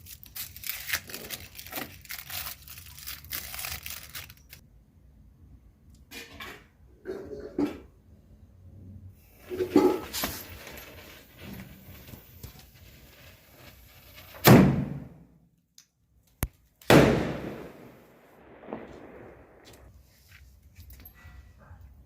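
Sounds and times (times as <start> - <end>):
firecrackers banging: 16.9 - 19.9.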